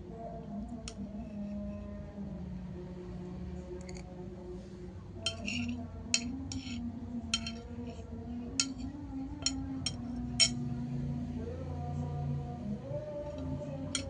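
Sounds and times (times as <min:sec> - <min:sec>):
low steady hum: 0:00.0 - 0:14.0
spoon clinking against a plate: 0:05.2 - 0:10.7.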